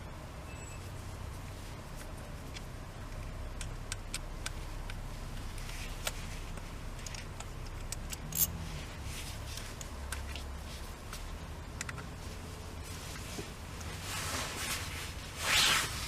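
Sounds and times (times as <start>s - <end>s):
low steady hum: 0.0s - 16.0s
metal parts and tools clicking: 6.9s - 8.6s.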